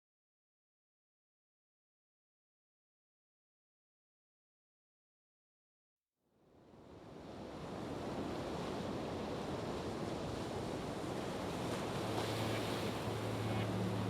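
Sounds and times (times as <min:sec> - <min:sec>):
rushing outdoor nature noise: 0:10.5 - 0:14.0
low steady hum: 0:11.8 - 0:14.0.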